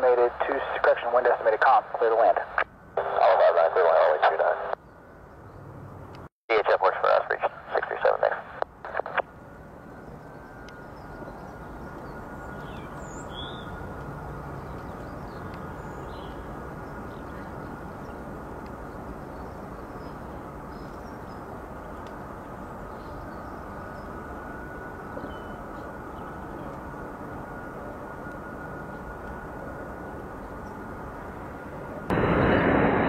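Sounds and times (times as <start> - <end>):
jet engines rumbling: 0.0 - 33.0
bird chirps: 10.0 - 13.8, 25.1 - 26.7.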